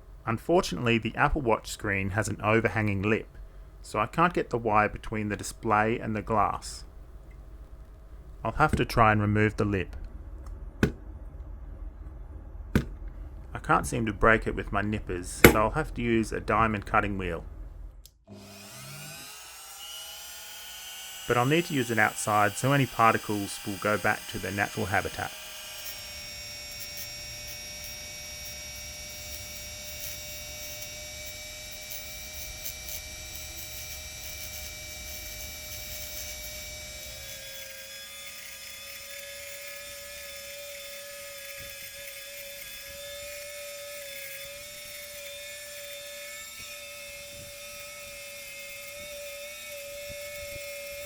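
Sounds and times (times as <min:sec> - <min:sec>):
rotary tool whining: 0:18.3 - 0:51.0.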